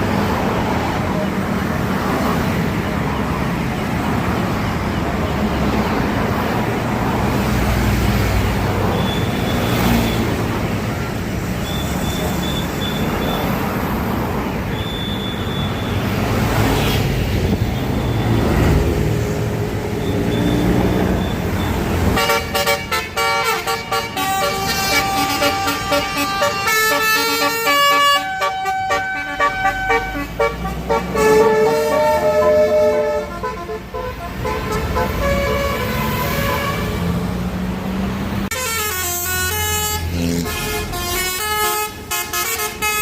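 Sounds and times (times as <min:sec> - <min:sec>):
traffic noise: 0:00.0 - 0:43.0
bus air horn playing melody: 0:22.1 - 0:37.1, 0:38.5 - 0:43.0.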